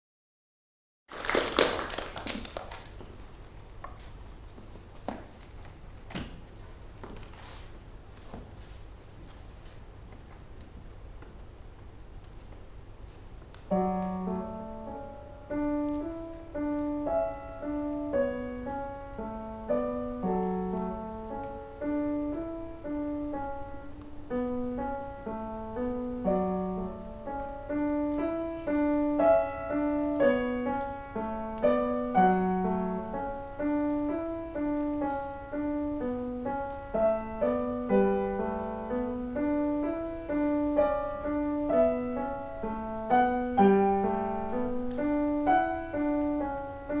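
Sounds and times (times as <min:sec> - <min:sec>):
solo piano piece: 0:10.9 - 0:47.0.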